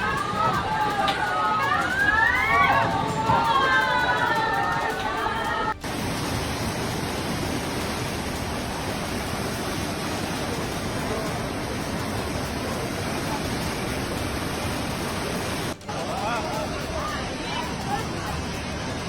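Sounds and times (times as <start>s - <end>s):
floodwater rushing: 0.0s - 19.0s.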